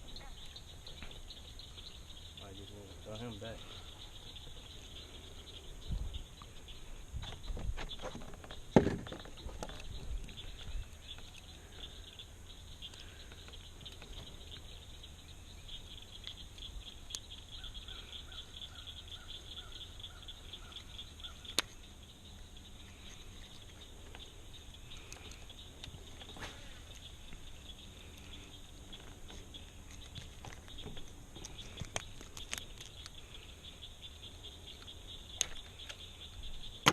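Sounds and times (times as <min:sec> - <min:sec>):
insects trilling: 0:00.0 - 0:36.9
knocks and thumps: 0:07.2 - 0:09.8.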